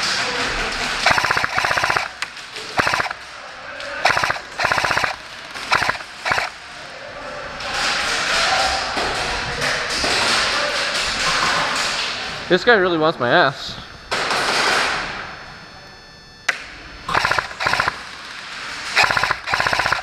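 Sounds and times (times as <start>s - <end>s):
airsoft gun full-auto bursts: 1.0s - 3.2s, 4.0s - 6.6s, 17.1s - 18.2s, 18.9s - 20.0s.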